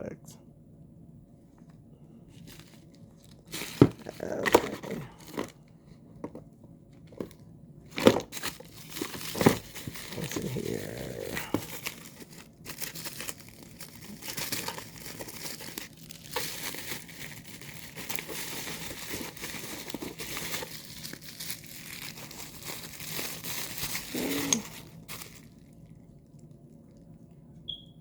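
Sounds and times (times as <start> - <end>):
packaging crinkling and rustling: 2.3 - 6.4, 7.0 - 26.6.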